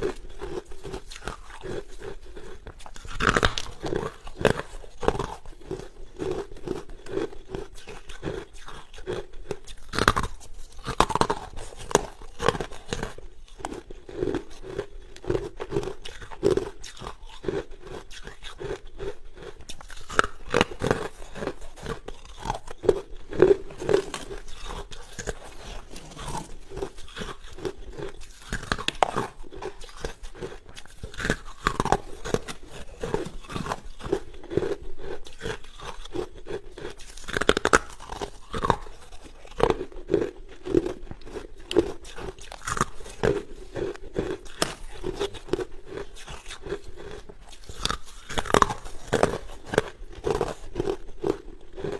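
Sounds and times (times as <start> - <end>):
person crunching ice: 0.0 - 51.9.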